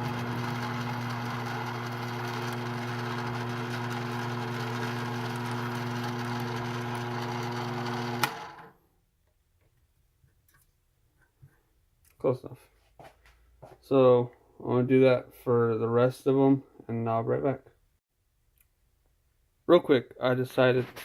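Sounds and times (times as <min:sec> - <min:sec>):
lathe motor hum: 0:00.0 - 0:08.7.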